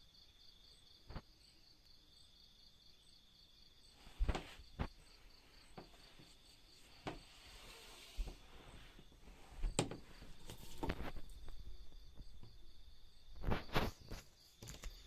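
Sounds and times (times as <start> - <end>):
insects trilling: 0.0 - 15.0
soft knocks: 5.7 - 6.4.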